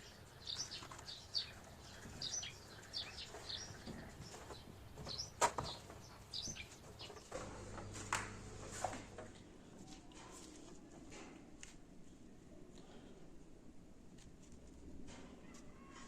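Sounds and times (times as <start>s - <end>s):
small bird chirping: 0.0s - 7.4s.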